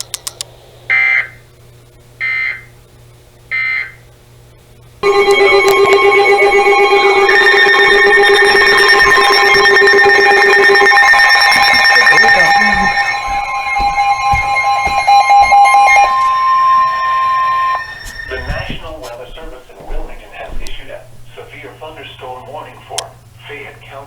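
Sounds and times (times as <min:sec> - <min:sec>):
steady electronic alert tone: 0:05.0 - 0:19.0
digital data squawks: 0:05.0 - 0:19.1.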